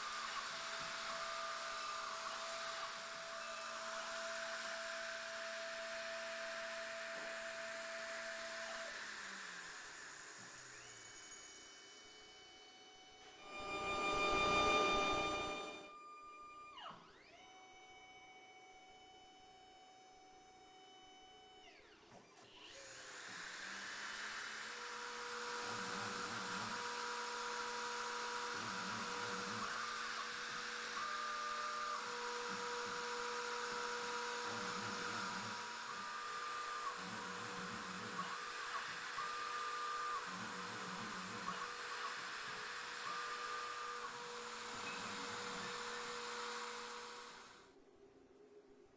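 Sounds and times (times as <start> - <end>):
milling machine whine: 0.0 - 16.0, 24.0 - 47.6
milling spindle hissing whine: 13.3 - 15.9
low warbling whir: 13.4 - 15.9
pitched tone bending down: 13.4 - 15.9.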